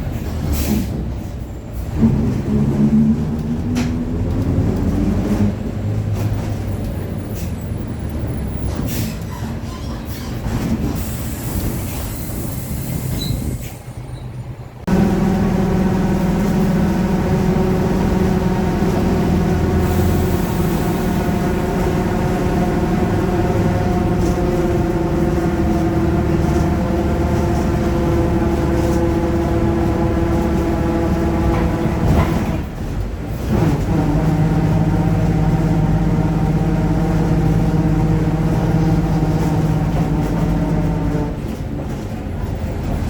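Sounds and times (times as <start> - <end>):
bus driveline rumble: 0.0 - 43.0
whining differential drone: 14.9 - 32.5.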